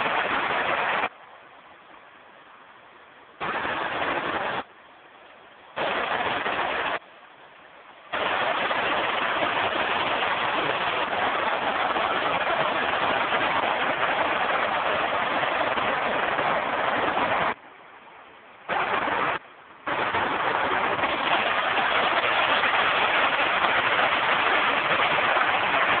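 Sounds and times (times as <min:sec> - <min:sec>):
waterfall rushing: 0:00.0 - 0:01.1, 0:03.4 - 0:04.7, 0:05.7 - 0:07.0, 0:08.1 - 0:17.6, 0:18.6 - 0:26.0.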